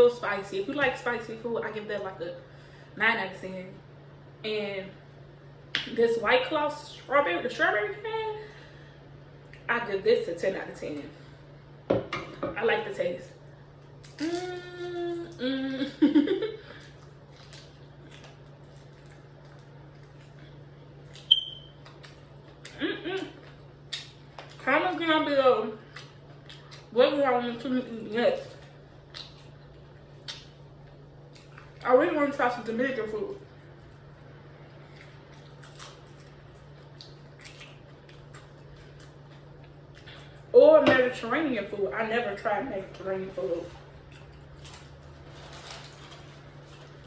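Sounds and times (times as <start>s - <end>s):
low electrical hum: 0.0s - 47.0s
chewing and mouth sounds: 16.7s - 24.7s, 25.8s - 27.0s, 28.3s - 31.8s, 34.8s - 40.5s, 43.7s - 45.0s.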